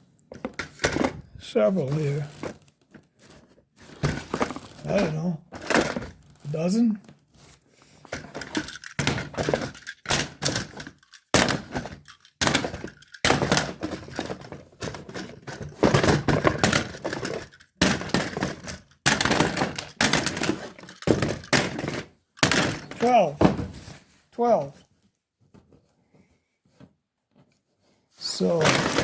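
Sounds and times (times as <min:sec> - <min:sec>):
mouse traps knocking and clattering: 0:08.1 - 0:23.2, 0:28.4 - 0:29.0.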